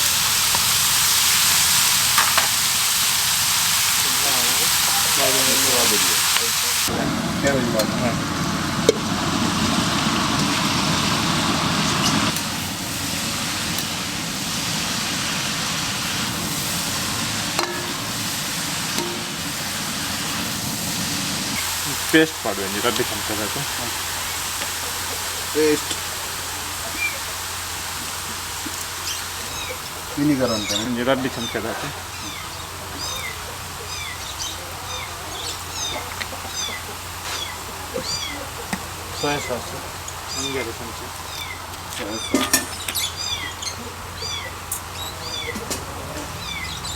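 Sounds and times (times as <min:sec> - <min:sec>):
vegetables sizzling in a pan: 0:00.0 - 0:46.9
spoon knocking against pan: 0:17.6 - 0:18.1, 0:18.9 - 0:19.4.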